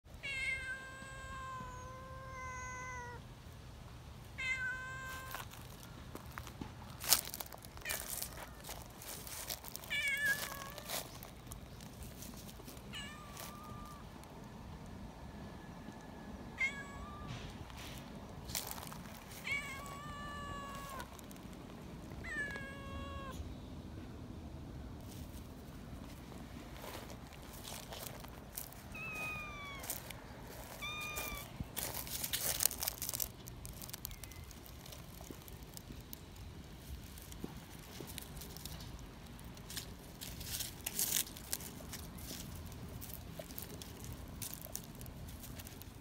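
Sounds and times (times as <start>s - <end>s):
cat meowing shrilly: 0.2s - 3.2s, 4.4s - 5.5s, 9.9s - 11.0s, 12.9s - 14.1s, 16.6s - 17.6s, 19.3s - 21.1s, 22.2s - 23.4s, 28.9s - 29.9s, 30.7s - 32.6s
kittens meowing: 7.8s - 11.3s, 12.8s - 14.1s, 19.2s - 21.3s, 22.2s - 23.4s, 28.6s - 33.2s.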